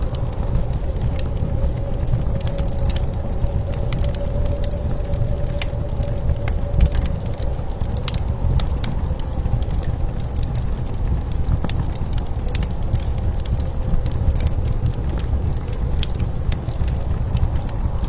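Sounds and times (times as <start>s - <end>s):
fire crackling and popping: 0.0s - 18.0s
low rumble of blizzard wind: 0.0s - 18.0s.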